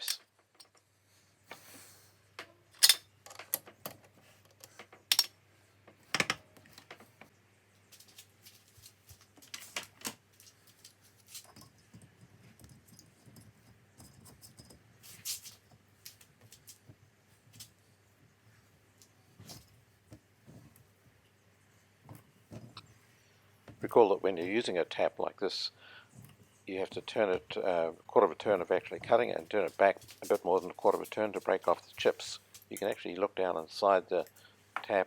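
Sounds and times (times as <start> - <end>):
metal tools clinking and knocking: 0.0 - 0.8, 2.4 - 5.4, 9.5 - 15.8.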